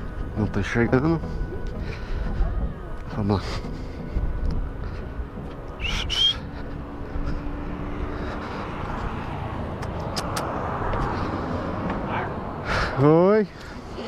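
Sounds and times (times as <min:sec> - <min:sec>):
traffic going by: 0:00.0 - 0:14.0
sharp clicks: 0:09.8 - 0:10.5.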